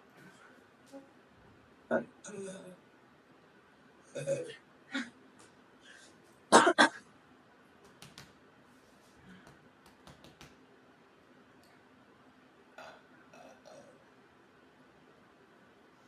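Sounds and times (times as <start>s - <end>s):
woman clearing throat: 6.5s - 7.0s.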